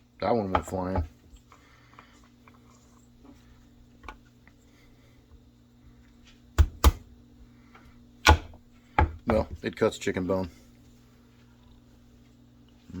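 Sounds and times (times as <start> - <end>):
faint steady hum: 0.0 - 13.0
knife chopping into bone: 6.6 - 7.0, 8.2 - 9.4.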